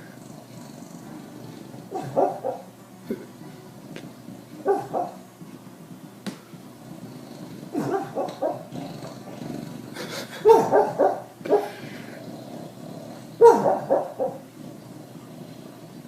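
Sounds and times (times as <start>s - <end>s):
dog woofing and yipping in sleep: 0.4s - 2.7s, 4.1s - 5.2s, 6.9s - 9.6s, 10.4s - 11.8s, 12.6s - 16.0s.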